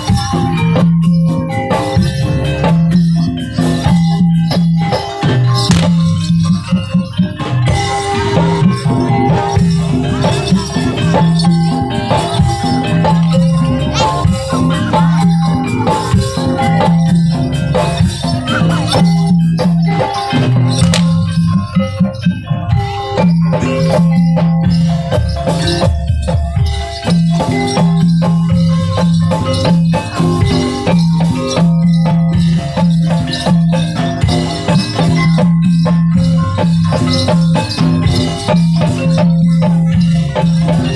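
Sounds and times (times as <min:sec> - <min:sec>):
drums: 0:00.0 - 0:40.9
gamelan-style music: 0:00.0 - 0:40.9
struck metallophone notes: 0:00.0 - 0:40.9
struck metal notes: 0:05.6 - 0:07.1.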